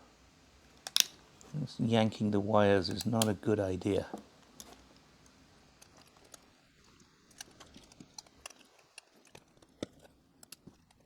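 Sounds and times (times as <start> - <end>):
small parts clicking and tapping: 0.7 - 1.5, 4.1 - 11.0.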